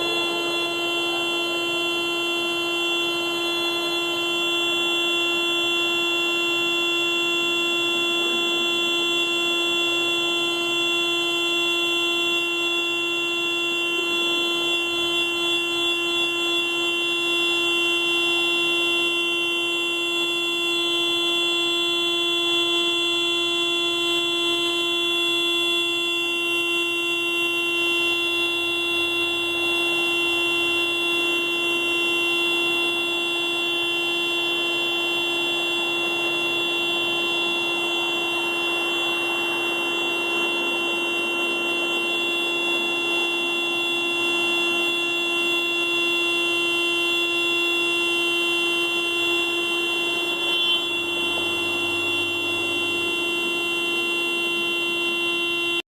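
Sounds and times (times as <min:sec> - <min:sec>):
car horn blaring: 0:00.0 - 0:55.8.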